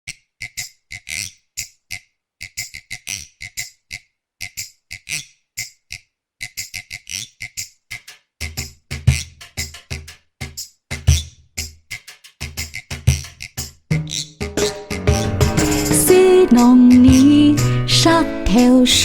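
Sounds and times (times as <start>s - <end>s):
crisp percussive music: 6.5s - 19.0s
deep bass beat: 13.9s - 18.1s.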